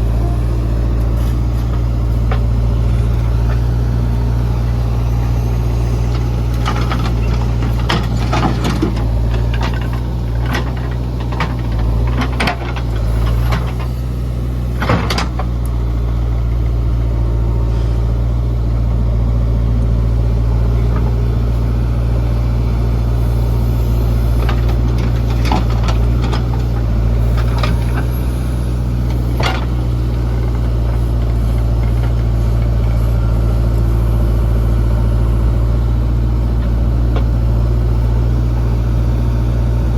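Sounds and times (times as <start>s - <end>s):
diesel engine running: 0.0s - 39.9s
metal clanks and knocks: 6.6s - 13.9s, 14.8s - 15.5s.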